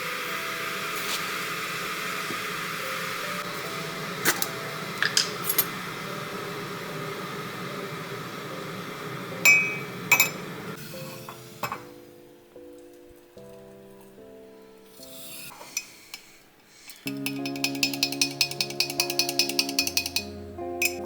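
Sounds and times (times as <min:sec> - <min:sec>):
coffee machine whirring: 0:00.0 - 0:11.8
soft music: 0:00.0 - 0:21.0
crockery clinking: 0:05.0 - 0:05.7, 0:09.5 - 0:10.4, 0:16.9 - 0:21.0.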